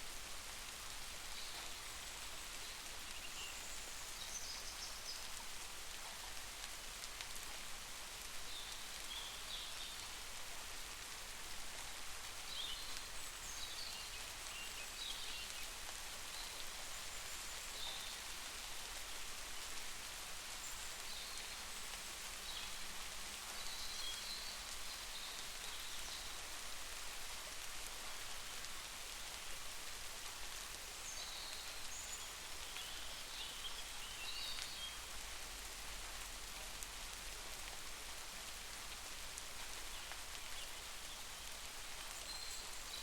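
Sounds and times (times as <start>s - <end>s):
steady rain: 0.0s - 43.0s.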